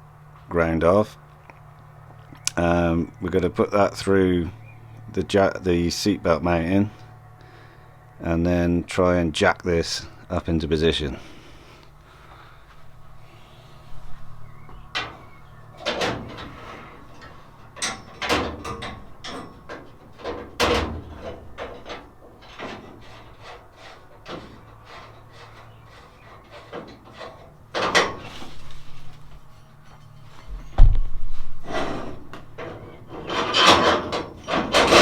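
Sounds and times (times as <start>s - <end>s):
steel parts and tools clanking: 14.8s - 35.0s.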